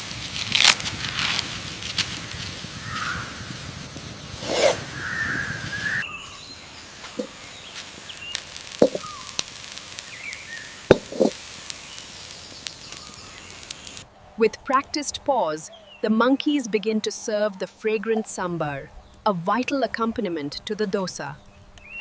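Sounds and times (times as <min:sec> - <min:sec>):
cooking hiss: 0:00.0 - 0:15.7
short knocks: 0:08.8 - 0:09.0, 0:10.9 - 0:11.3.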